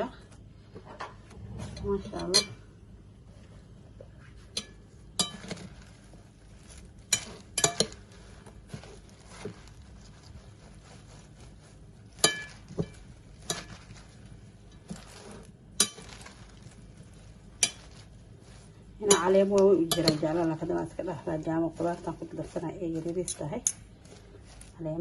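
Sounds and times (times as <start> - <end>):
utensils clinking against dishes: 4.5 - 5.8, 7.1 - 8.0, 19.0 - 20.7.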